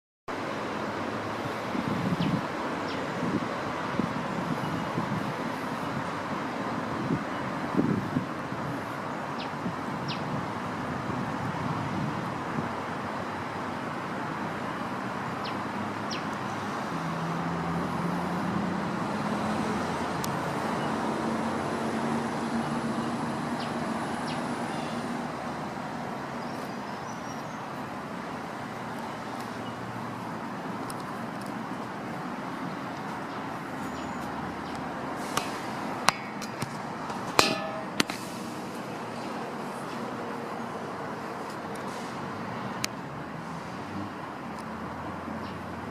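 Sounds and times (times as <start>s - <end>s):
highway traffic noise: 0.3s - 45.9s
vehicle engine hum passing: 13.3s - 37.4s, 38.0s - 45.9s
thumps: 36.1s - 38.2s.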